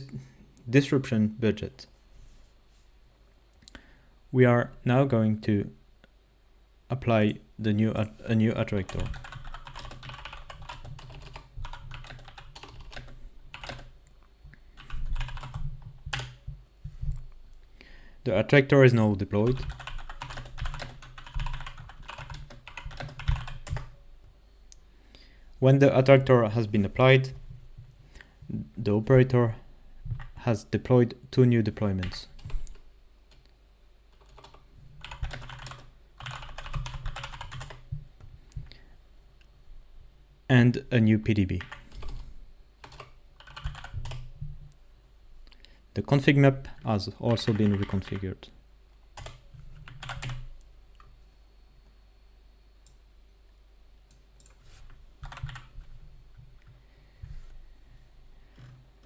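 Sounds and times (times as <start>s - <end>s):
low steady hum: 0.0s - 59.0s
typing on computer keyboard: 8.9s - 14.0s, 14.8s - 16.4s, 19.4s - 24.0s, 34.2s - 37.9s, 42.8s - 44.3s, 47.3s - 48.2s, 49.2s - 51.1s, 55.2s - 55.7s.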